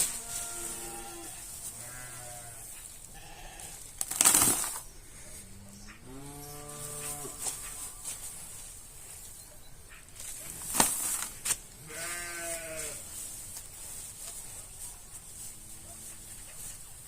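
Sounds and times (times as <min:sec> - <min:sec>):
sheep bleating: 0:00.1 - 0:03.8, 0:11.8 - 0:13.0.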